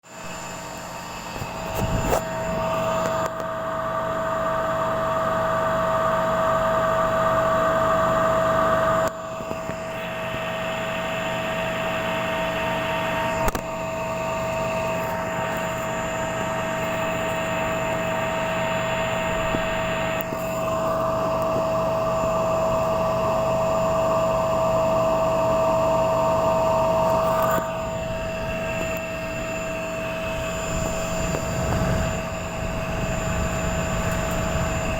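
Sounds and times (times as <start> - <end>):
electric motor hum and whine: 0.0 - 34.9
rough motor noise: 1.2 - 3.3, 26.1 - 34.9.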